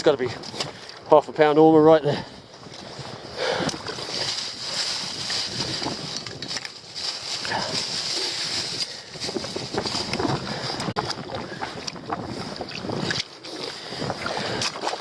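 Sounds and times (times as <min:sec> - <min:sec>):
wind buffeting microphone: 0:00.0 - 0:15.0
seawater splashing among rocks: 0:03.6 - 0:15.0.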